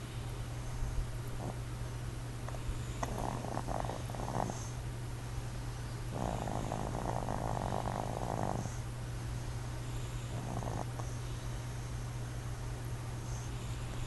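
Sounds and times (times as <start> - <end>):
steady low hum: 0.0 - 14.0
person snoring: 3.0 - 4.8, 6.1 - 8.8, 10.3 - 11.2.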